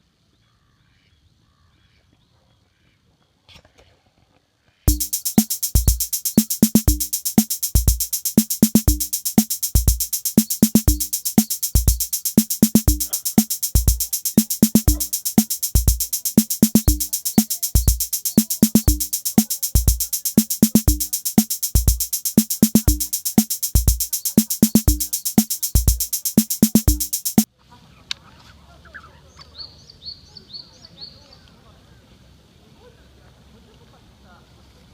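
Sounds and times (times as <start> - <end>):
bright hiss: 4.9 - 27.5
drum machine beat: 4.9 - 27.5.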